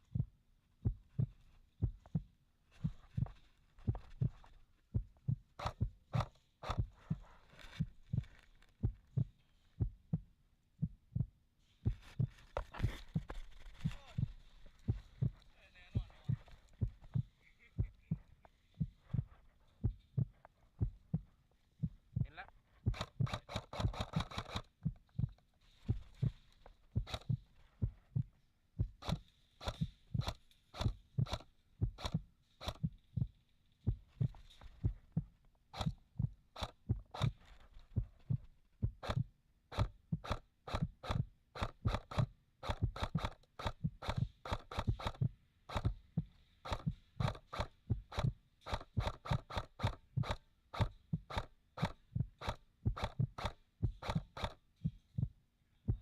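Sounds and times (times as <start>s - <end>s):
irregular thumps: 0.0s - 56.0s
sharp clicks: 5.6s - 9.3s, 22.9s - 26.4s, 27.0s - 27.5s, 29.0s - 32.9s, 35.7s - 37.5s, 39.0s - 54.6s.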